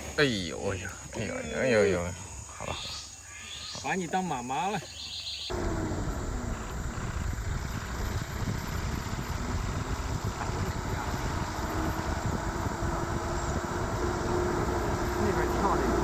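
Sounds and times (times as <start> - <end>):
faint engine hum: 5.5 - 16.0
moving vehicle rumble: 5.5 - 16.0.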